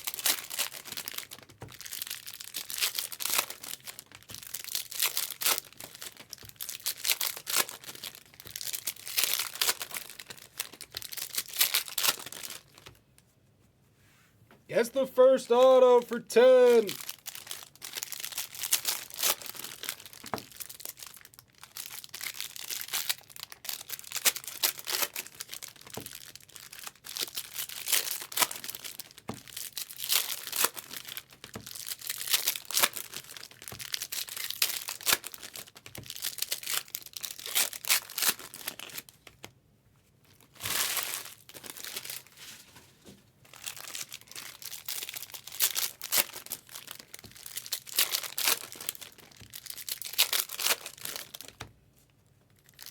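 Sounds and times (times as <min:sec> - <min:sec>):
card pack wrappers crinkling: 0:00.0 - 0:13.0, 0:16.7 - 0:39.4, 0:43.5 - 0:51.6.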